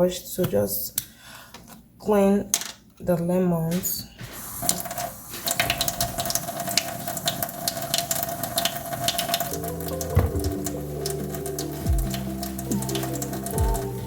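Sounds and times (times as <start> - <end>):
tap water running into sink: 3.8 - 13.9
background music: 9.4 - 14.0
knocks and clicks of handling: 10.1 - 10.7.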